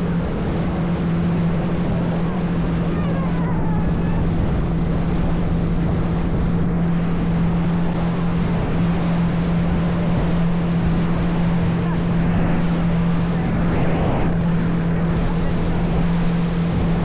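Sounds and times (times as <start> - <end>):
boat engine droning: 0.0 - 17.0
rushing water noise: 0.0 - 17.0.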